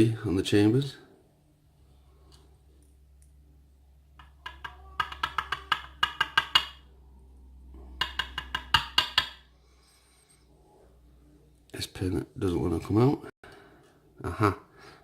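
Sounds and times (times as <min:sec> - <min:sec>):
sharp metallic taps: 0:04.2 - 0:06.9, 0:07.8 - 0:09.5.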